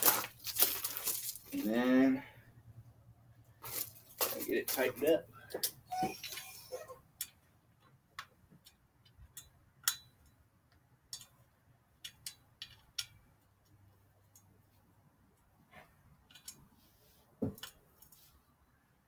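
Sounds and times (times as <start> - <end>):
tool clicking and tapping on metal: 7.2 - 11.4, 12.0 - 13.3.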